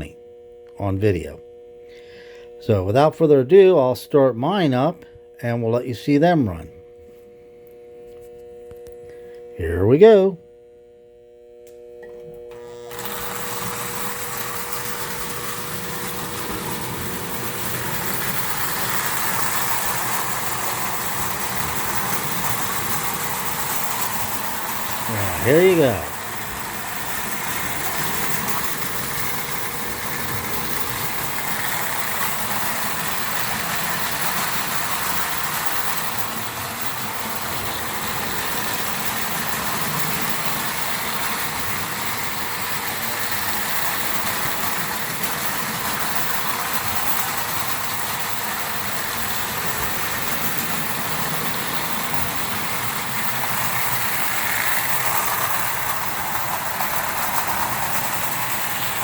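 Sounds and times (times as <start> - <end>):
faint steady hum: 0.0 - 59.0
small electric motors whirring: 11.3 - 59.0
toy train wheels rumbling on track: 12.6 - 59.0.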